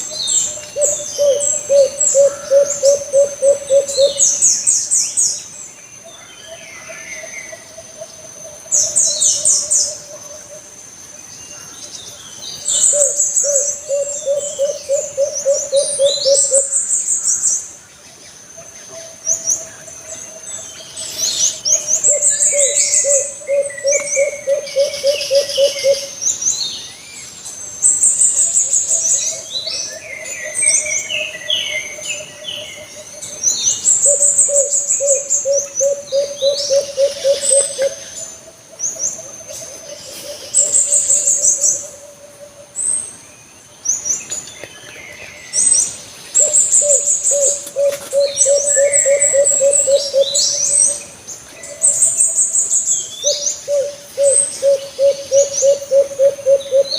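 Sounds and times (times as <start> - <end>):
dove cooing: 0.4 - 4.5, 12.8 - 16.7, 21.9 - 26.2, 31.9 - 38.2, 46.4 - 51.0, 53.2 - 56.9.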